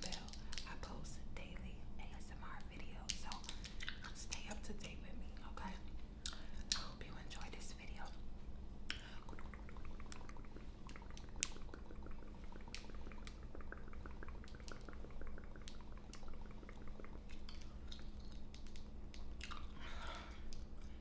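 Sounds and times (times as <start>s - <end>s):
gum chewing and smacking: 3.1s - 4.5s, 6.2s - 7.6s, 8.9s - 21.0s.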